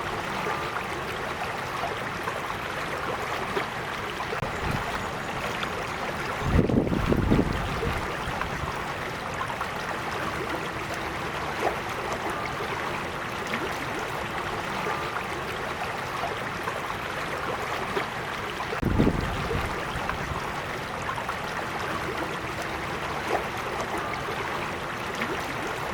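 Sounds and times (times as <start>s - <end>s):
creek babbling over stones: 0.0s - 25.9s.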